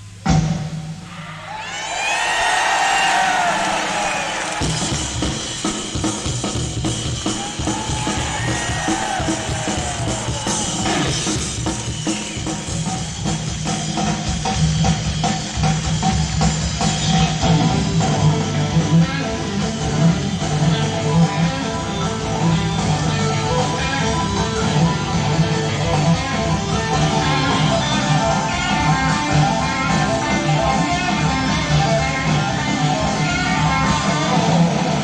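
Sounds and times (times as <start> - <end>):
bass line: 3.2 - 14.6
live rock band playing: 3.9 - 35.0
drum strikes: 4.4 - 14.0.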